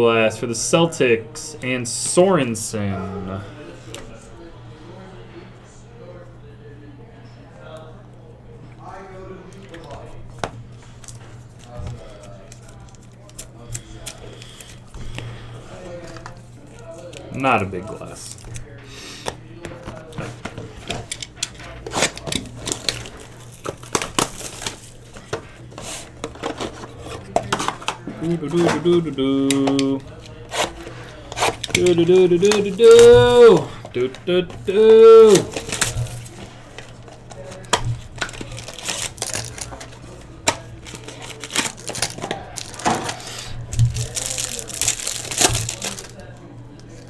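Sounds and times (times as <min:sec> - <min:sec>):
card pack wrappers crinkling: 0:09.6 - 0:47.0
cards flipped and stacked: 0:19.2 - 0:46.2.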